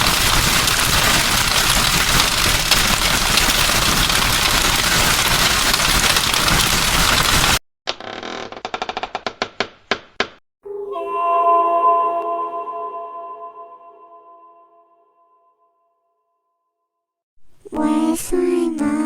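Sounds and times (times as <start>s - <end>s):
hailstones pelting down: 0.0s - 7.6s
door creaking: 7.9s - 10.4s.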